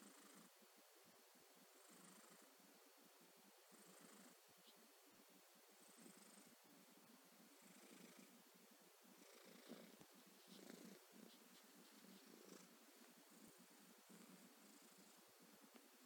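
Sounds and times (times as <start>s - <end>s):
cat snoring faintly: 0.0s - 0.6s, 1.8s - 2.6s, 3.6s - 4.8s, 5.7s - 15.8s.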